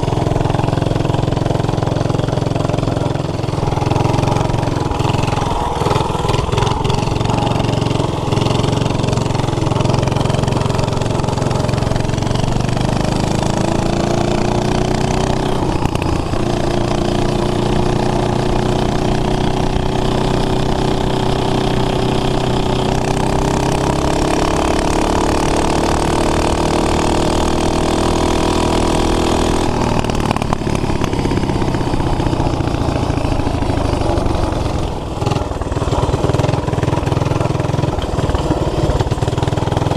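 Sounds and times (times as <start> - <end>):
mini bike engine running hard: 0.0 - 39.9.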